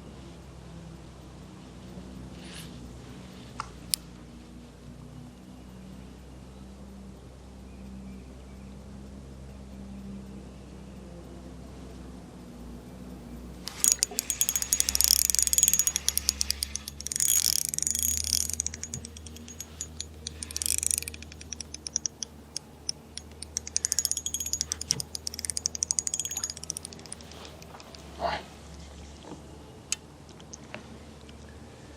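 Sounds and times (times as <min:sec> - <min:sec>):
fishing reel drag clicking: 0:13.7 - 0:28.0.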